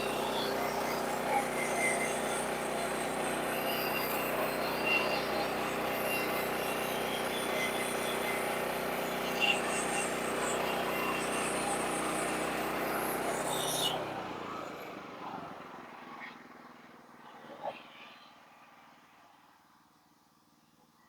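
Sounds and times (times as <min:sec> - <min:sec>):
sawmill engine running: 0:00.0 - 0:16.6.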